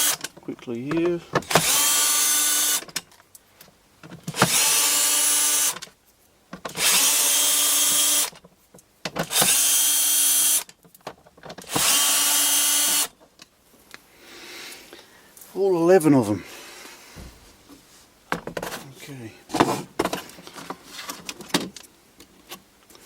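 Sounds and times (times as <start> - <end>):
power drill undoing screws: 0.0 - 0.3, 1.4 - 3.0, 4.2 - 5.9, 6.7 - 8.4, 9.2 - 10.8, 11.5 - 13.1.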